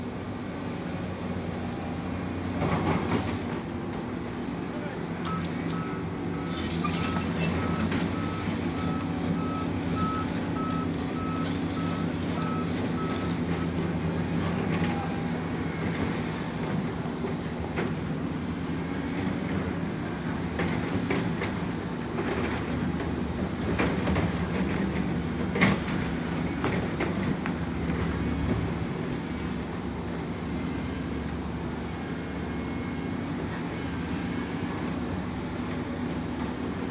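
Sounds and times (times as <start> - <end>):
construction vehicle engine running: 0.0 - 36.9
reversing alarm beeping: 5.3 - 13.4
loud high squeal: 10.7 - 12.2.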